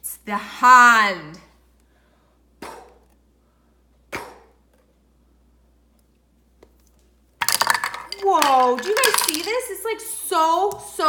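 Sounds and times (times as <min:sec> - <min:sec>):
sharp slap or knock: 0:04.1 - 0:04.4
jingling clatter: 0:07.4 - 0:09.7.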